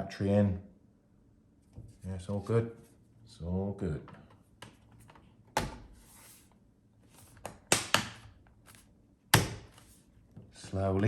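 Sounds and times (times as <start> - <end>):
plastic laptop case knocks: 9.4 - 9.7.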